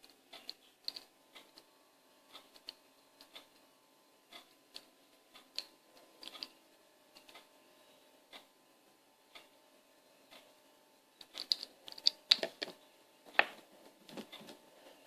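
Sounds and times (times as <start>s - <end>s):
small toys clicking and tapping: 0.0s - 1.6s, 5.5s - 6.6s, 11.2s - 12.8s.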